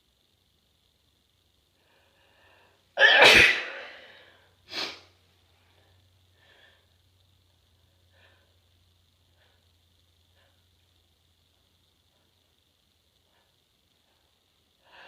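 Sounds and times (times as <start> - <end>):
person sneezing: 3.0 - 5.1.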